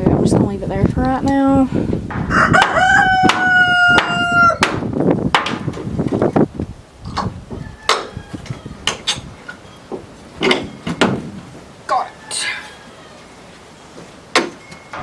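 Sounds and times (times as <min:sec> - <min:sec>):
hammer blows knocking a board: 0:02.1 - 0:05.9
rooster crowing: 0:02.3 - 0:04.6, 0:07.5 - 0:09.2, 0:12.0 - 0:13.6.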